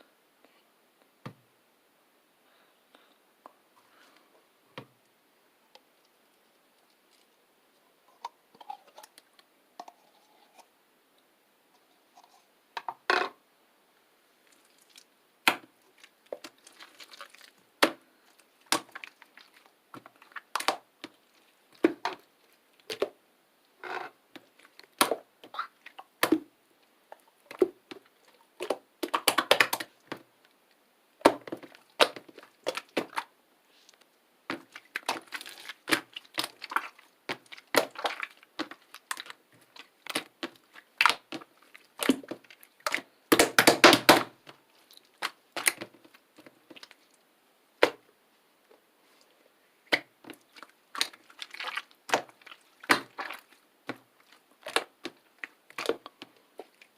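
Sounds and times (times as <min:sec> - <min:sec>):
bubbly slime popping and crackling: 0:14.5 - 0:23.2, 0:23.8 - 0:26.5, 0:27.1 - 0:30.2, 0:31.2 - 0:33.3, 0:34.5 - 0:47.1, 0:49.9 - 0:56.9.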